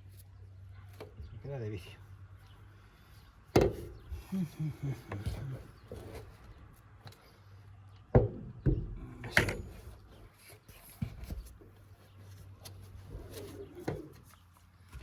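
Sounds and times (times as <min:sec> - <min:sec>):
sharp knocks: 0:08.1 - 0:09.8.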